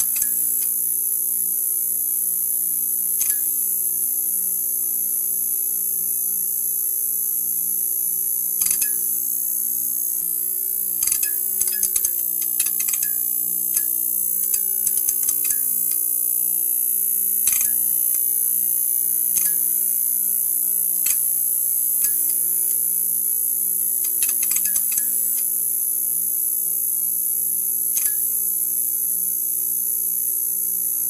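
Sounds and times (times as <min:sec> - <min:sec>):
neon sign buzzing: 0:06.1 - 0:31.0
crackling clicks: 0:11.0 - 0:16.0, 0:17.5 - 0:18.3, 0:21.0 - 0:21.3, 0:22.0 - 0:22.8, 0:24.0 - 0:25.5.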